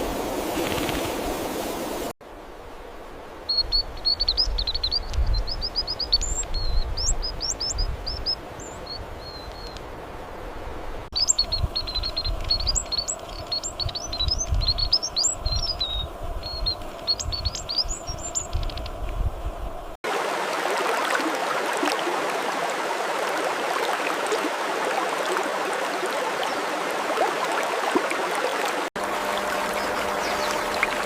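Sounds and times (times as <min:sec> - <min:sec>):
songbird twittering chirps: 0:03.5 - 0:09.8, 0:11.2 - 0:19.0, 0:29.4 - 0:31.0.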